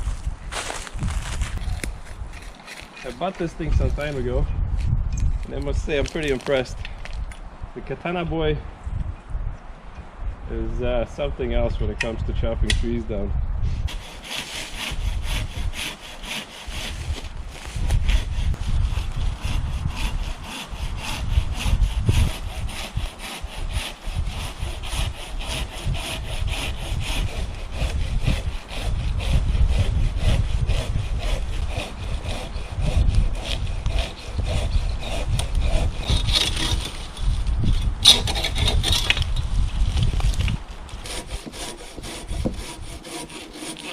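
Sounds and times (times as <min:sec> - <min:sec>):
hand saw cutting log: 0:01.7 - 0:04.2, 0:13.9 - 0:39.3, 0:40.0 - 0:43.9.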